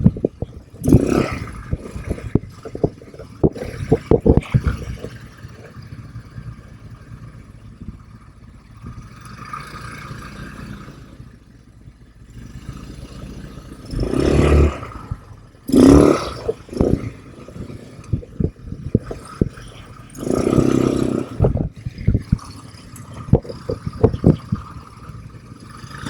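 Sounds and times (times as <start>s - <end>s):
clattering over rough ground: 0.0s - 9.4s, 13.8s - 26.0s
atv engine running: 0.0s - 26.0s.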